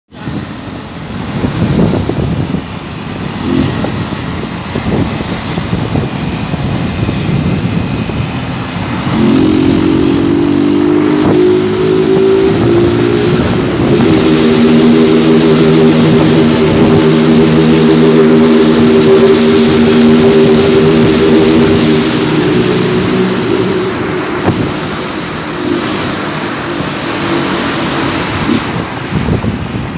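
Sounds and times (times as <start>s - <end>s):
motorcycle engine in tunnel: 0.1s - 29.9s.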